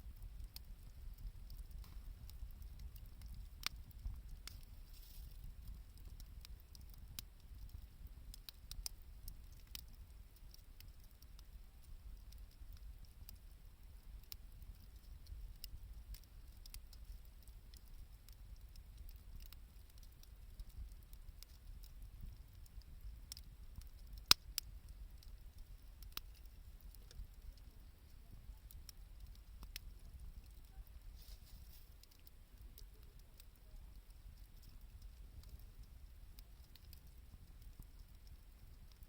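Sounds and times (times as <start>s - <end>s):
campfire crackling and popping: 0.0s - 39.0s.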